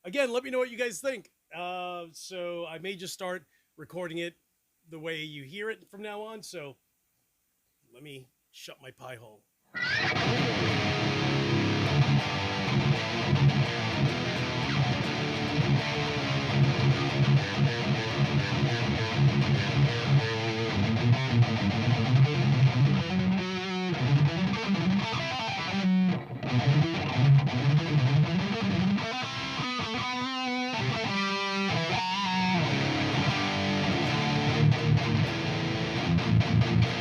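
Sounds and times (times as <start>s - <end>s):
distorted electric guitar riffing: 9.8s - 37.0s.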